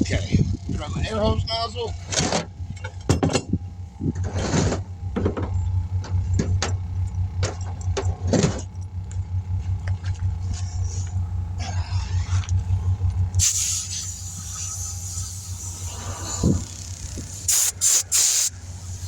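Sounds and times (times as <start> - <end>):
low engine hum: 0.0 - 19.0
compressed air blasts hissing: 13.4 - 19.0.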